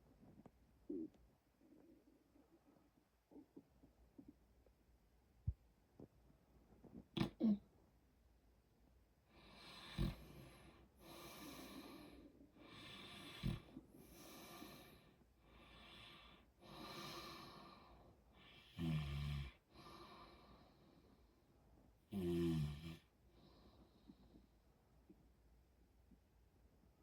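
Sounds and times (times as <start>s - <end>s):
man snoring: 12.8s - 13.7s, 18.5s - 19.6s, 22.1s - 23.0s.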